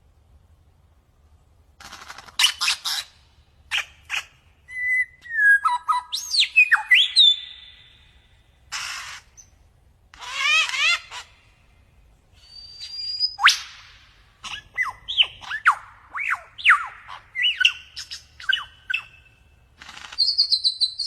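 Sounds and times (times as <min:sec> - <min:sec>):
bird singing varied song: 0:03.7 - 0:09.6, 0:12.4 - 0:21.0.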